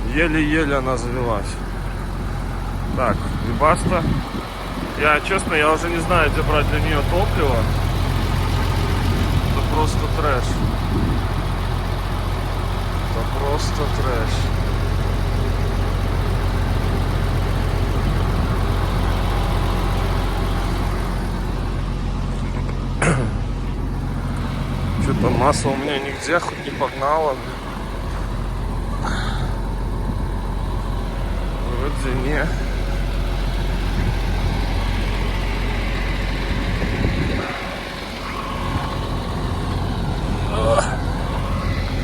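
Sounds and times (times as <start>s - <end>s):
diesel truck engine idling: 0.0s - 42.0s
wind buffeting microphone: 2.7s - 6.6s, 10.5s - 11.5s, 23.9s - 30.6s, 36.3s - 42.0s.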